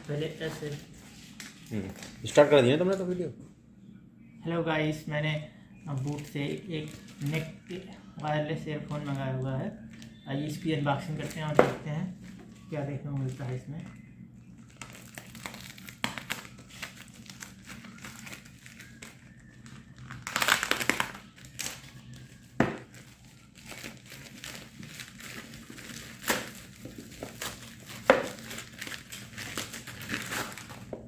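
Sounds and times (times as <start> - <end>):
plastic packaging crinkling: 5.9 - 10.2, 12.2 - 31.0.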